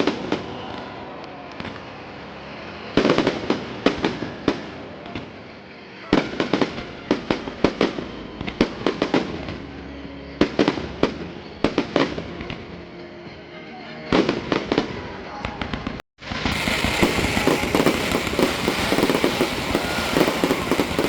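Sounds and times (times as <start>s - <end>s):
fireworks bangs and cracks: 16.2s - 21.0s.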